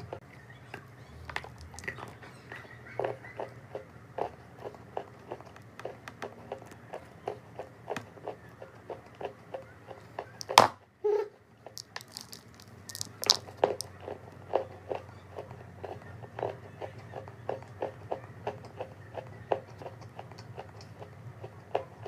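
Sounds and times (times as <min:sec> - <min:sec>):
chalk crunching being chewed: 0:01.4 - 0:03.5, 0:11.7 - 0:16.0.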